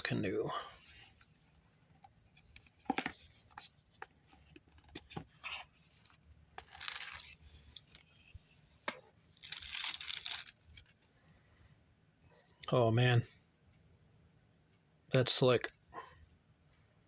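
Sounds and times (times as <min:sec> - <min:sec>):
packaging rustling and tearing: 0:06.6 - 0:08.0, 0:09.4 - 0:11.0.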